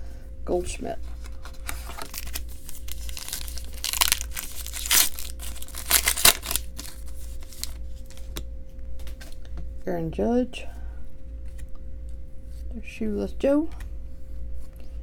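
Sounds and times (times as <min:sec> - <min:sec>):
faint steady hum: 0:00.0 - 0:15.0
card pack wrapper tearing and crinkling: 0:01.2 - 0:08.4.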